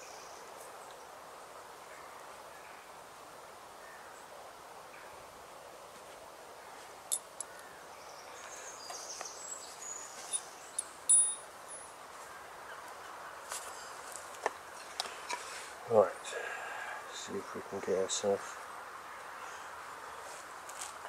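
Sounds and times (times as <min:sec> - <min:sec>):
faint outdoor hush: 0:00.0 - 0:21.0
high ringing clinks: 0:07.1 - 0:07.4, 0:10.3 - 0:12.0.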